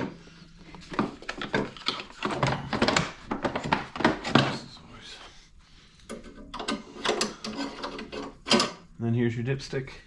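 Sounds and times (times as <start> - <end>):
knocks and clatters: 0.8 - 4.6.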